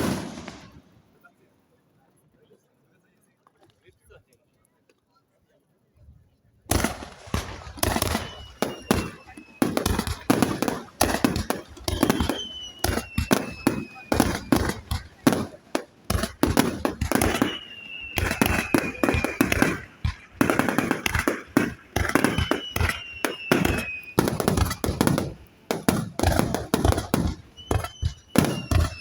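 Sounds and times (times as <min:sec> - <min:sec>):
fireworks whistles sliding down: 0:00.0 - 0:00.8, 0:07.3 - 0:29.0
fireworks crackling: 0:00.0 - 0:01.1, 0:06.7 - 0:29.0.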